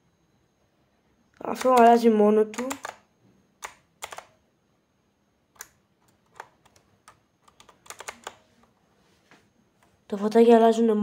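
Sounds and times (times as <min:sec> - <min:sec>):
mechanical keyboard clicks: 0:01.4 - 0:03.0, 0:03.6 - 0:04.4, 0:05.5 - 0:08.4.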